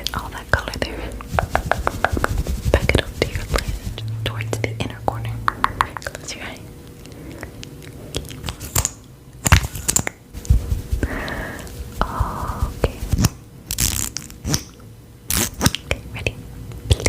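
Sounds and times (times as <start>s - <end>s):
crinkling and tearing: 13.1s - 14.7s.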